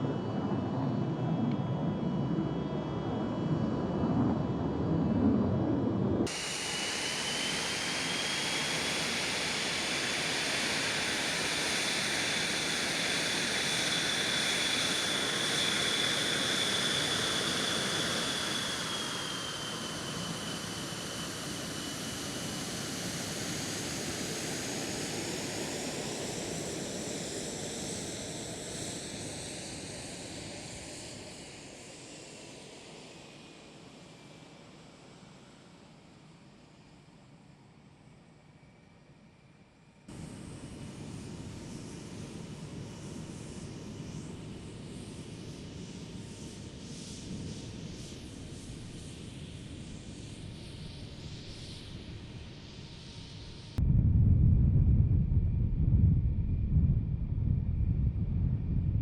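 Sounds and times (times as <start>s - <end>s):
jet engine running: 0.0s - 33.5s
high whistling whine: 6.2s - 26.6s.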